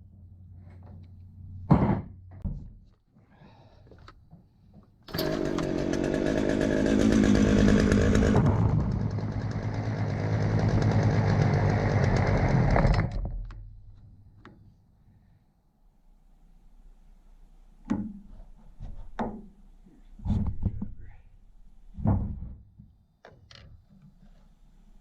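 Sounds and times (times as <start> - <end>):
chainsaw engine running: 5.1 - 13.1.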